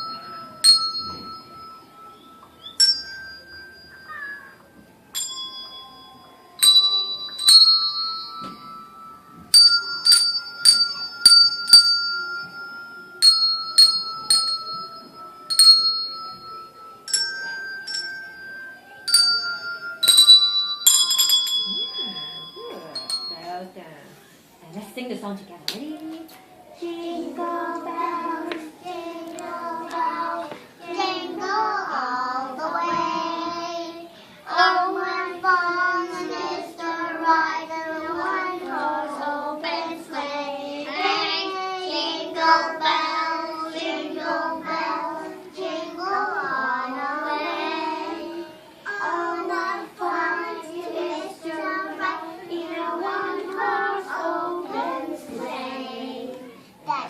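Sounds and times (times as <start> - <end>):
young children singing: 0.0 - 5.4, 26.2 - 57.0.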